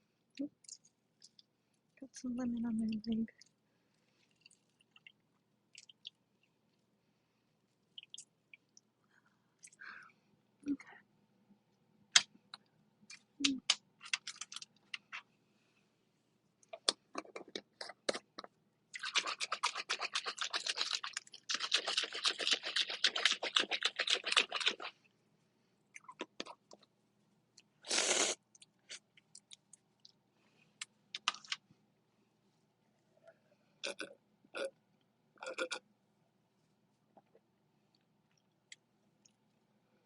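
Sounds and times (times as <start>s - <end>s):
crunching and scraping of eating: 14.0s - 15.3s, 16.7s - 25.1s
short hiss: 27.8s - 28.4s.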